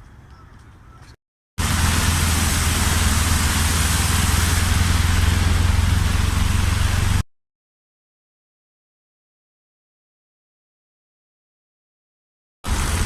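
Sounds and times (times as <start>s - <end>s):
heavy rain rushing: 1.6s - 7.2s, 12.7s - 13.0s
low rumble: 1.6s - 7.2s.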